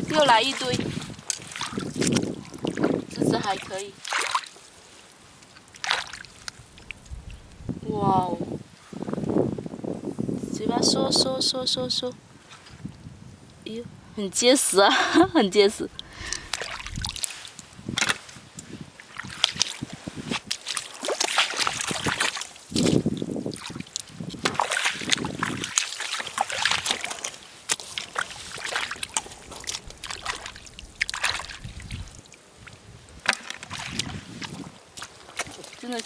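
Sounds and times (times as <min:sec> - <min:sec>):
wind buffeting microphone: 0:00.0 - 0:04.0, 0:06.5 - 0:20.5, 0:21.6 - 0:27.1, 0:28.2 - 0:36.0
wet sloshing and squelching: 0:00.0 - 0:07.5, 0:16.0 - 0:36.0.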